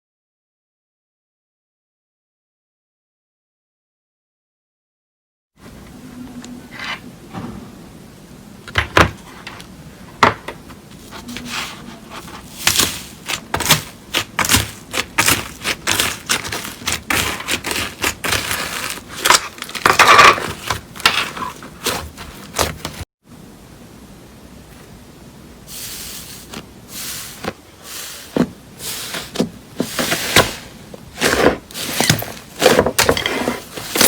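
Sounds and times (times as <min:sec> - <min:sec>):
slime popping and crackling: 0:12.6 - 0:20.5.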